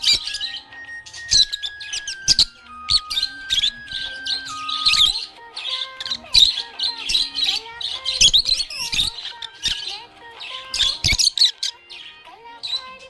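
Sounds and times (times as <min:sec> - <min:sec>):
budgerigar chirping: 0:00.0 - 0:13.0.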